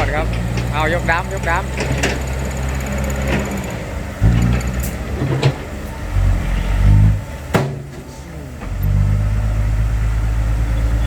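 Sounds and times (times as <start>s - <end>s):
truck engine labouring: 0.0s - 11.0s
metallic clunks: 7.5s - 9.0s.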